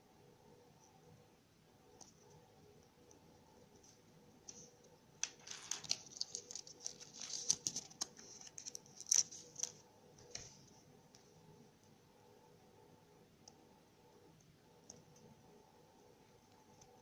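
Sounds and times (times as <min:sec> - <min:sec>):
wrapper crinkling: 0:05.2 - 0:09.8.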